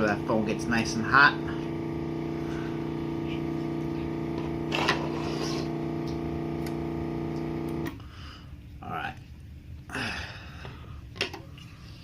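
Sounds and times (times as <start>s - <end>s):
machine electric hum: 0.0s - 8.0s.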